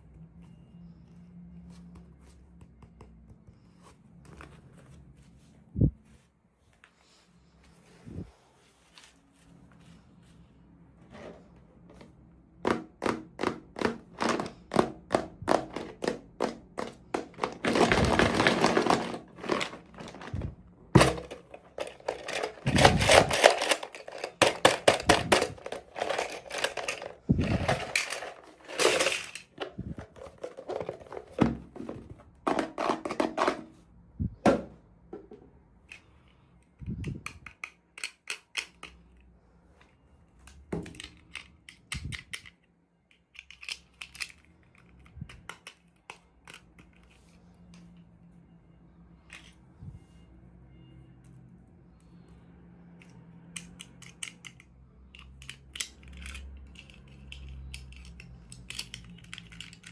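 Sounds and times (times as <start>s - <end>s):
packaging clicks and taps: 12.6s - 33.6s
scratchy packaging rustling: 17.3s - 33.2s.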